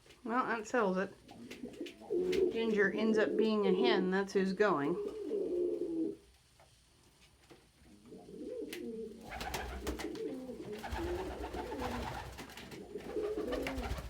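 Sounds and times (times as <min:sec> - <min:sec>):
pigeons cooing: 0:01.2 - 0:03.9, 0:05.0 - 0:06.2, 0:08.0 - 0:14.0.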